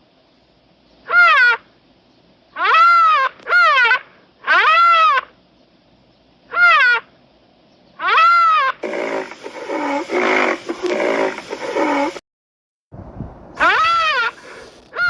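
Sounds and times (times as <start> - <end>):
animal cries rising and falling: 2.6 - 5.3, 8.0 - 12.2, 13.6 - 15.0.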